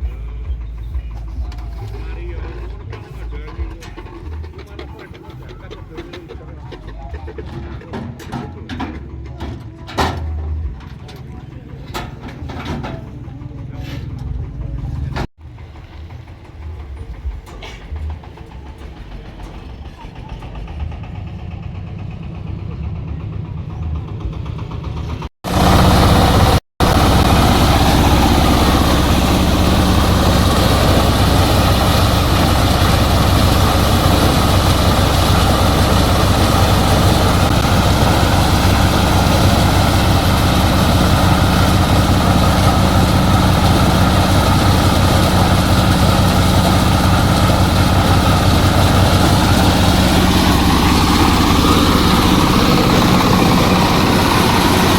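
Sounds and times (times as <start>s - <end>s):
machine engine running: 0.0s - 54.9s.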